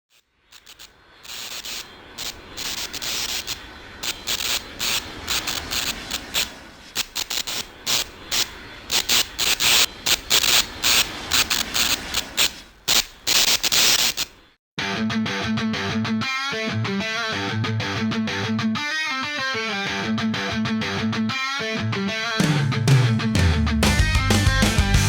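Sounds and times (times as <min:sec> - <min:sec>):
short scraping strokes: 0:00.1 - 0:14.4.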